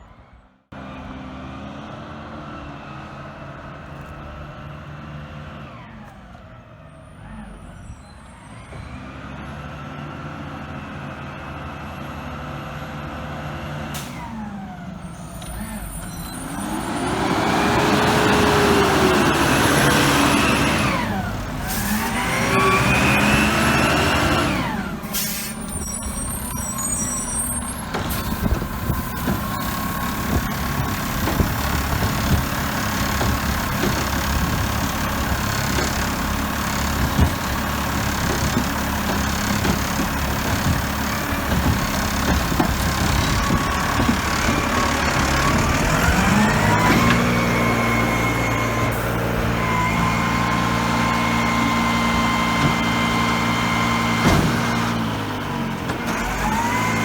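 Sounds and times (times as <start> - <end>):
truck engine: 0.0 - 57.0
truck brakes squealing: 6.9 - 9.2, 14.0 - 55.2.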